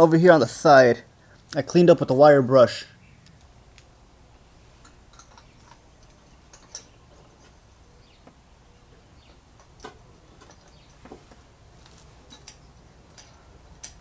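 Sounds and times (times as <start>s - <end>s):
sharp clicks: 3.2s - 3.9s
metal parts clinking: 4.8s - 7.0s, 12.2s - 14.0s.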